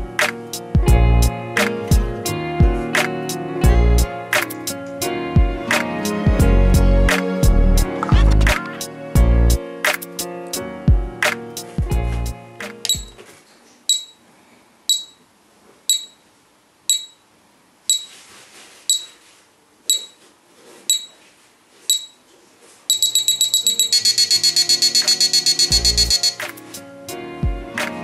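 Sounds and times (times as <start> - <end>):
music: 0.0 - 13.2, 23.4 - 28.0
alarm clock beeping: 12.9 - 13.2, 13.9 - 14.2, 14.9 - 15.2, 15.9 - 16.2, 16.9 - 17.2, 17.9 - 18.2, 18.9 - 19.2, 19.9 - 20.2, 20.9 - 21.2, 21.9 - 22.2, 22.9 - 26.5.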